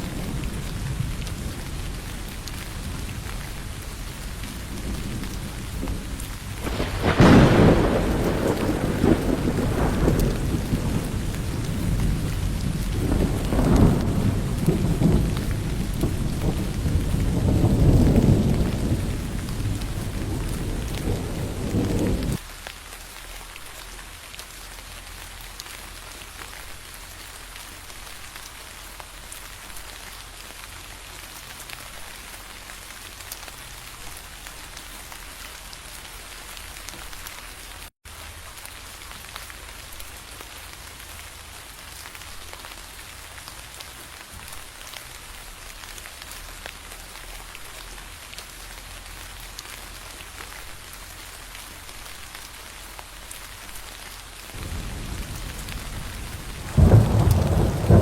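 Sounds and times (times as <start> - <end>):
rain drops ticking on surface: 0.0 - 58.0.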